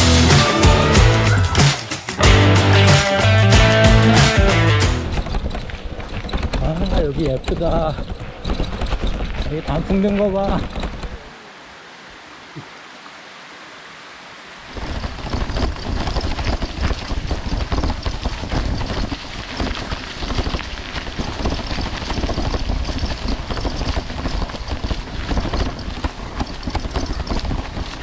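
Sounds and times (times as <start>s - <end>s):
quiet hiss: 9.4s - 27.9s.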